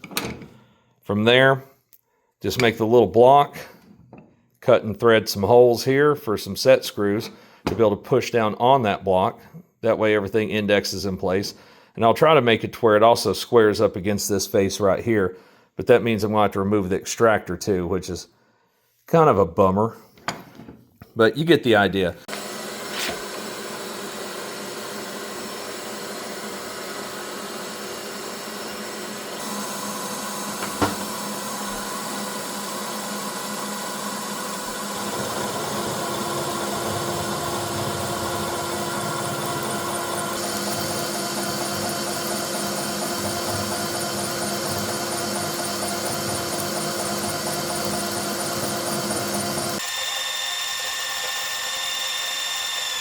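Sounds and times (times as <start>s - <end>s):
milling machine cutting metal: 22.3s - 53.0s.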